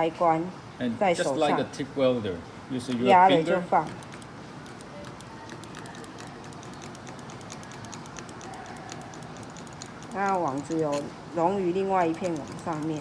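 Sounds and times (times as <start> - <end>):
spot welder ticking: 3.7 - 13.0.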